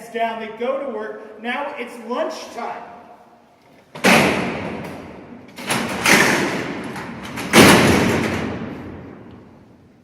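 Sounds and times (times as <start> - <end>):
metal cell doors slamming: 3.9 - 9.7.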